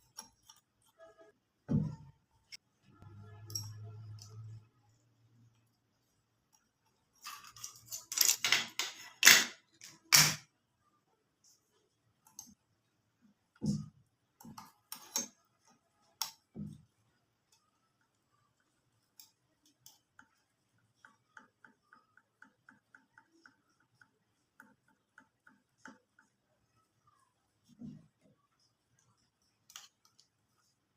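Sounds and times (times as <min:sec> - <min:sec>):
metal parts clattering: 0:07.2 - 0:09.5.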